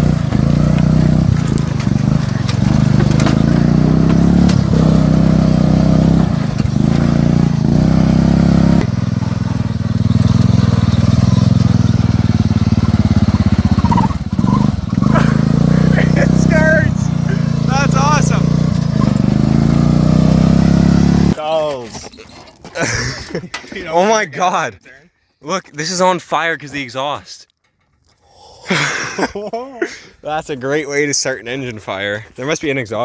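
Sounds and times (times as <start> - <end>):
riding mower engine revving: 0.0 - 21.4.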